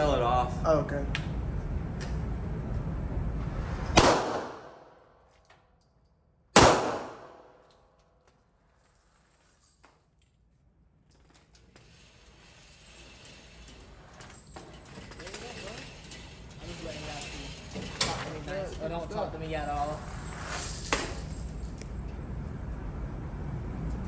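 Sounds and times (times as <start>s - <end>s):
gunshots with echo: 3.9s - 4.8s, 6.6s - 7.6s.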